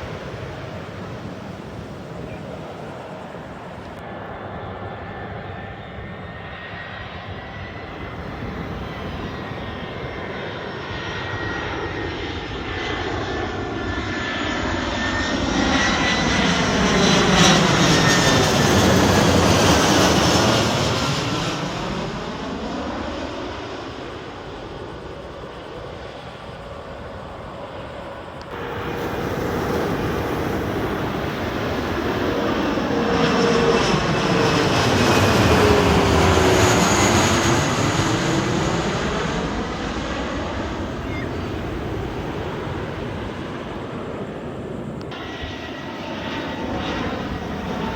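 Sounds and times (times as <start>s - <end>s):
falling engine whine: 0.0s - 4.0s, 7.8s - 22.5s, 28.3s - 47.9s
jet aircraft passing overhead: 0.0s - 47.9s.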